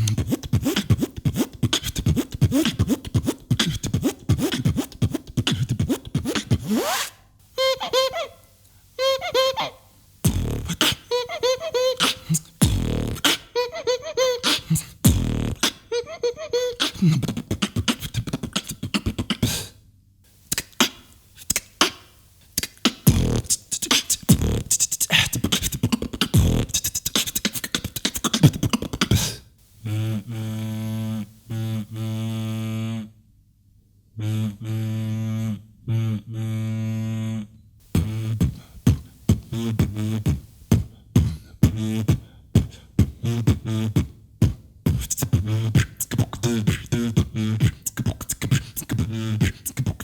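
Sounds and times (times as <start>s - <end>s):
man beatboxing: 0.0s - 7.2s, 10.2s - 19.7s, 20.5s - 30.7s, 37.9s - 50.0s.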